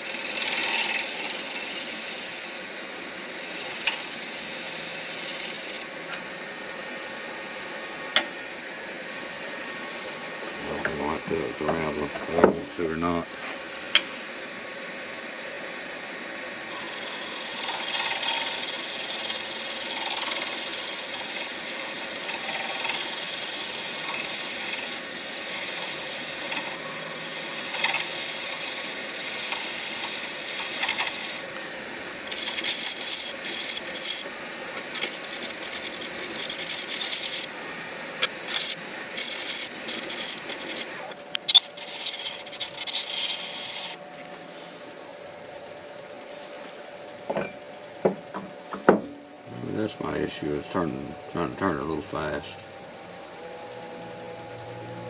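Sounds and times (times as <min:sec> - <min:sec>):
tool hissing cut on lathe: 0:00.0 - 0:05.9, 0:16.7 - 0:37.6, 0:38.2 - 0:44.0
lathe humming: 0:00.0 - 0:55.0.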